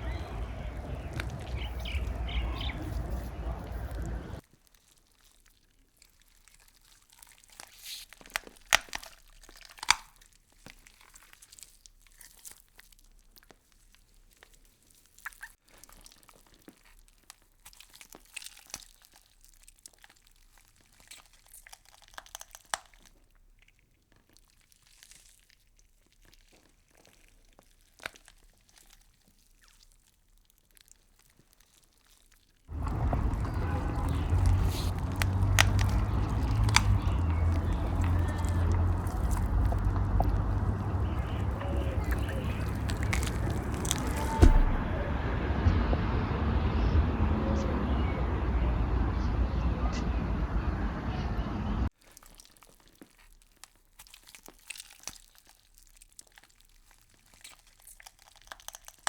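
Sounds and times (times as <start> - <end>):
crunching and crackling clicks: 0.0 - 45.3, 51.9 - 59.0.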